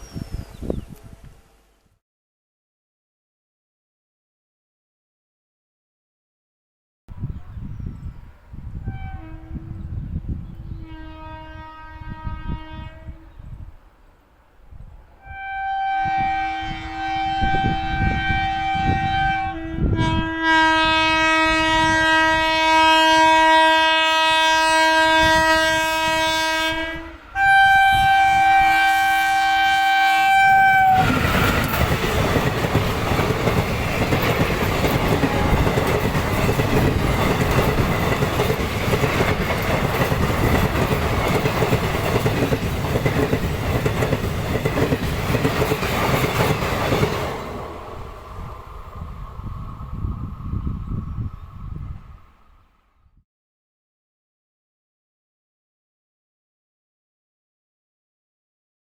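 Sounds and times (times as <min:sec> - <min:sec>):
locomotive horn blasts: 0:08.8 - 0:09.9, 0:10.8 - 0:13.4, 0:15.2 - 0:31.1, 0:35.0 - 0:35.9
train wheels clattering over rail joints: 0:31.0 - 0:47.9.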